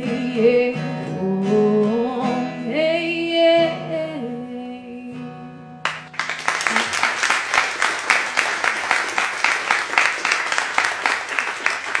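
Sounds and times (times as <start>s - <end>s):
audience applause: 5.9s - 12.0s.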